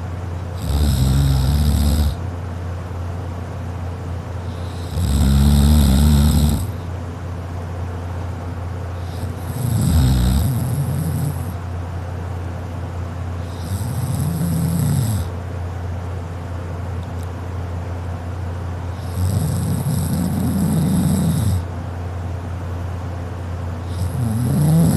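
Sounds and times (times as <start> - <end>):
steady low hum: 0.0 - 24.9
person snoring: 0.6 - 2.2, 4.5 - 6.8, 9.0 - 11.6, 13.4 - 15.3, 18.9 - 21.7, 23.8 - 24.9.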